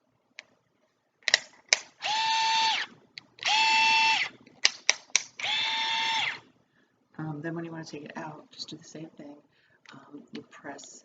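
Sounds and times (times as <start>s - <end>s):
cordless drill motor whirring: 2.0s - 4.4s, 5.4s - 6.4s.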